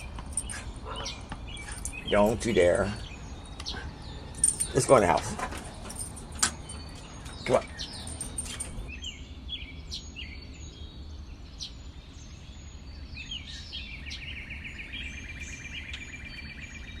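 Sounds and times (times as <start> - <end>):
steady low rumble: 0.0 - 12.6
birds chirping: 0.0 - 17.0.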